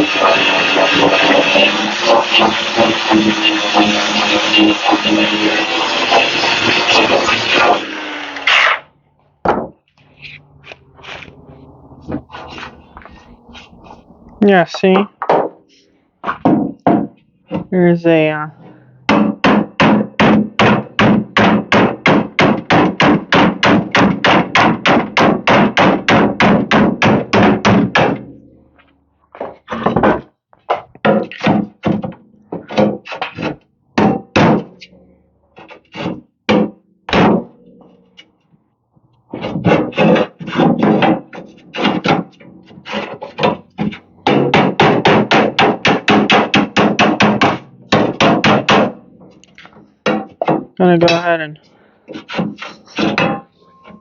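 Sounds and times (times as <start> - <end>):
hammer striking sheet metal: 19.1 - 28.8, 36.5 - 38.0, 39.4 - 51.3, 52.1 - 54.0.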